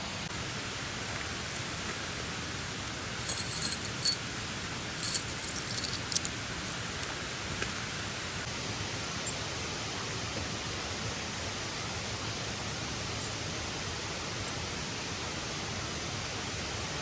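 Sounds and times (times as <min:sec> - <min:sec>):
rain: 0:00.0 - 0:03.3
waterfall: 0:00.0 - 0:17.0
metallic jingles and clinks: 0:03.2 - 0:04.2, 0:05.0 - 0:07.1.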